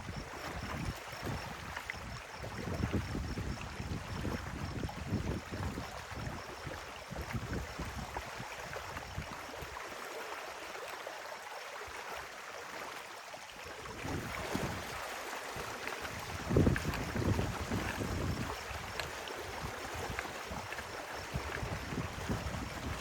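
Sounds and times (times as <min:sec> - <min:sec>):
wind buffeting microphone: 0:00.0 - 0:09.2, 0:13.8 - 0:15.0, 0:16.1 - 0:23.0
stream water running: 0:00.0 - 0:23.0.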